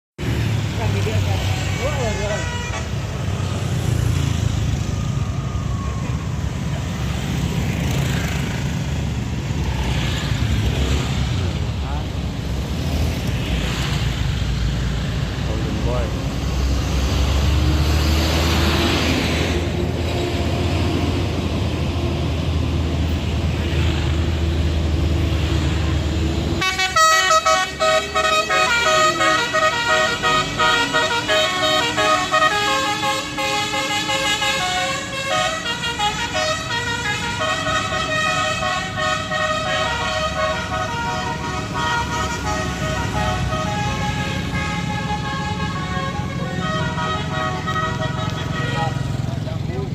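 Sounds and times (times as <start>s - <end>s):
bus engine rumbling: 0.2s - 49.9s
multi-tone bus horn tune: 1.5s - 3.5s, 26.6s - 49.3s.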